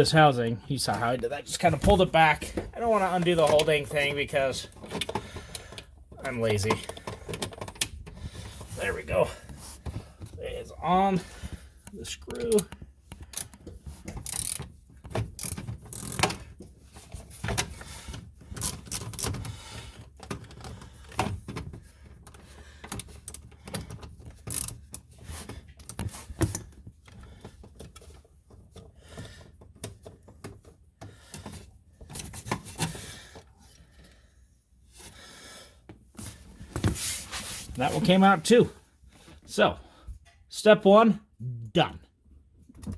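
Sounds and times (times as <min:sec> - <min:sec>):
ratchet clicking: 0:14.2 - 0:14.6.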